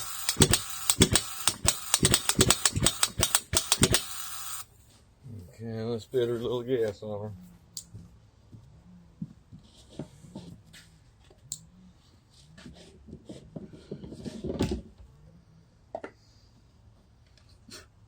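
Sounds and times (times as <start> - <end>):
hands knocking and clicking on machine: 0.0 - 4.1.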